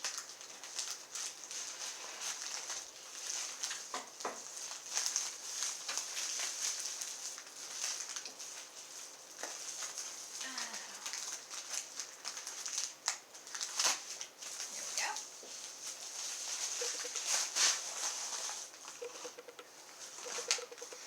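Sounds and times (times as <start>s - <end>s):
packaging rustling and crinkling: 0.0s - 10.4s, 11.0s - 14.8s
small clicks: 19.0s - 19.7s, 20.3s - 21.0s.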